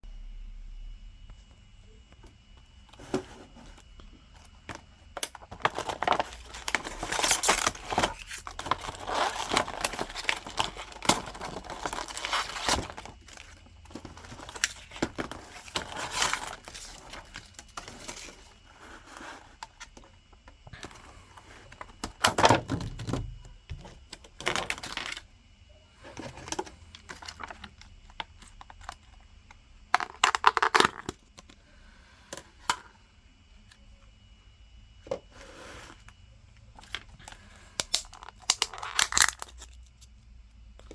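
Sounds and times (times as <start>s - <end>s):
plastic packaging crinkling: 5.1s - 19.1s, 24.1s - 25.2s, 30.0s - 31.2s, 36.8s - 40.1s.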